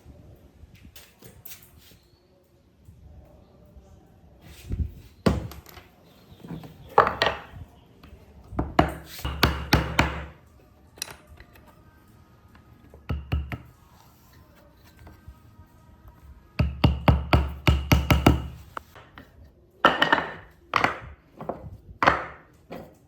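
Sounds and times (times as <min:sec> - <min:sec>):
wood and tools knocking: 0:06.5 - 0:07.6, 0:08.6 - 0:10.4, 0:13.0 - 0:13.8, 0:16.6 - 0:23.0.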